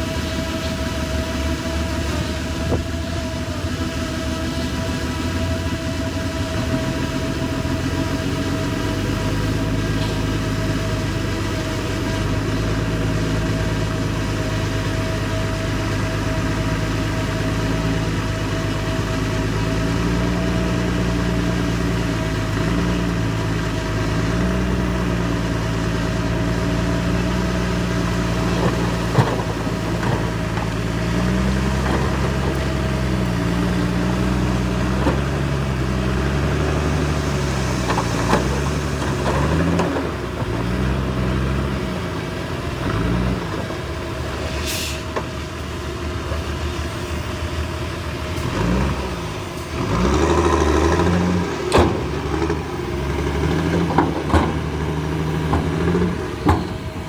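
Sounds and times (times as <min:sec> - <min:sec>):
high whine: 0:00.0 - 0:14.2
bulldozer diesel engine: 0:00.0 - 0:57.0.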